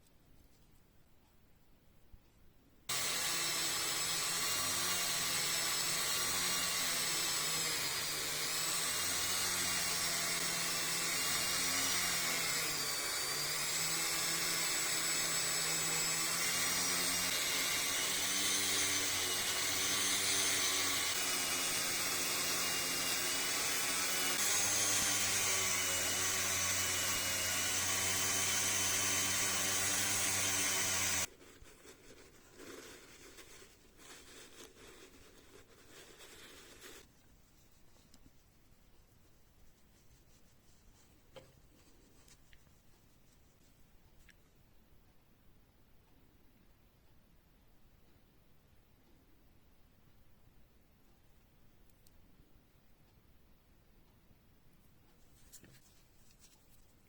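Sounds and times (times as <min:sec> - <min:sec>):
rotary tool whining on metal: 0:02.9 - 0:31.3.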